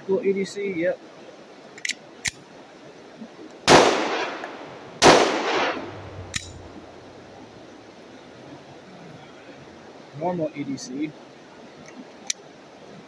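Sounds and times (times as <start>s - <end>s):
pistol shots with echo: 3.7s - 6.8s.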